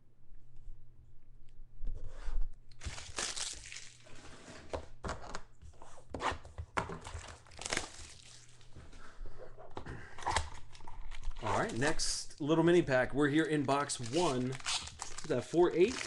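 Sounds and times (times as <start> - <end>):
wrapper tearing and crinkling: 2.8 - 4.1, 7.2 - 8.6, 13.8 - 16.0.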